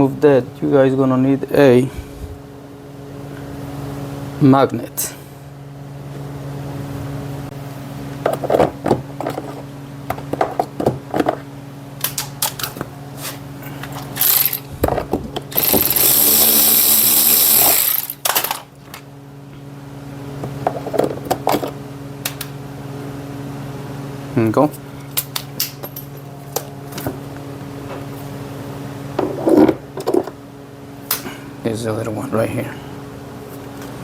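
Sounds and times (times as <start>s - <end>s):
steady low hum: 0.0s - 34.0s
power driver running: 8.2s - 30.3s.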